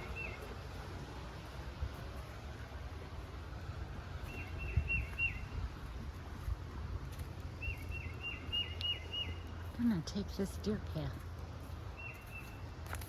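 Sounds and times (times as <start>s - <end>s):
songbird whistling: 0.0s - 0.4s, 4.3s - 5.5s, 7.6s - 9.5s, 12.0s - 12.6s
steady low rumble: 0.0s - 13.0s.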